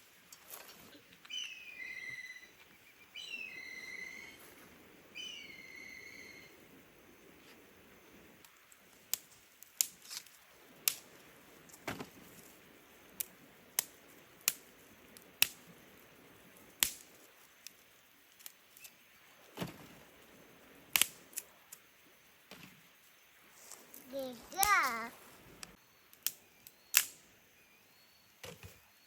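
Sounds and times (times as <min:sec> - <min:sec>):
dry wood cracking and snapping: 0:16.8 - 0:17.1, 0:20.9 - 0:21.4.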